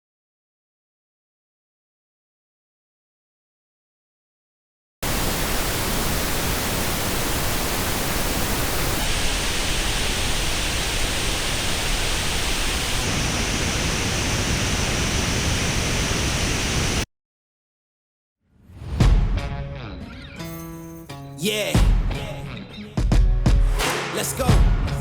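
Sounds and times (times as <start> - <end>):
pink noise hiss: 5.0 - 17.0.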